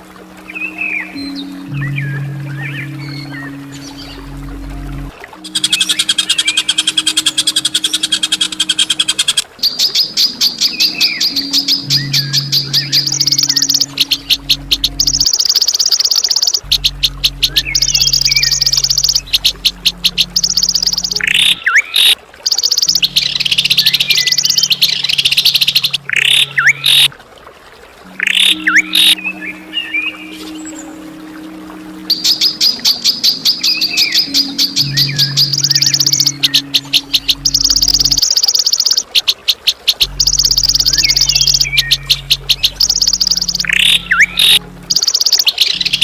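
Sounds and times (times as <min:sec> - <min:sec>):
steady low hum: 0:00.0 - 0:08.6, 0:11.5 - 0:15.3, 0:16.6 - 0:21.5, 0:40.0 - 0:45.0
low steady hum: 0:00.0 - 0:39.1, 0:39.9 - 0:46.0
harsh rasping bird calls: 0:00.4 - 0:27.1, 0:28.2 - 0:30.9, 0:32.1 - 0:46.0
songbird trilling: 0:05.4 - 0:27.1, 0:28.2 - 0:30.8, 0:32.1 - 0:46.0
dipping bird whistle: 0:10.8 - 0:27.1, 0:28.2 - 0:30.3, 0:32.1 - 0:46.0.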